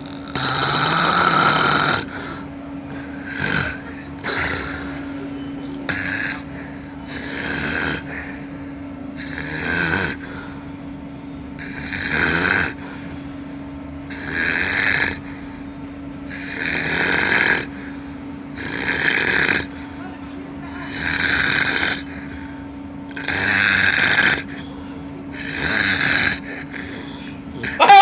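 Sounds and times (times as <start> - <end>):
baby snoring: 0.0 - 2.5, 3.2 - 5.0, 5.9 - 8.4, 9.2 - 10.6, 11.6 - 13.2, 14.1 - 15.4, 16.3 - 17.9, 18.5 - 19.8, 20.8 - 22.3, 23.1 - 28.0.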